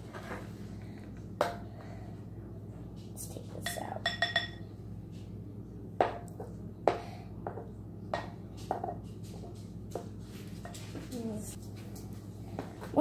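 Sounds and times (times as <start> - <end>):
utensil knocking against bowl: 3.6 - 4.6.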